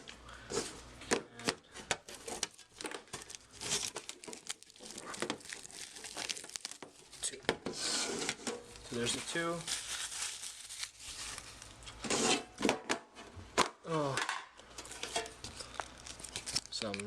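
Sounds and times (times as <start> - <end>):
plastic wrapping crinkling and tearing: 2.0 - 7.4, 8.6 - 12.0, 14.8 - 17.0.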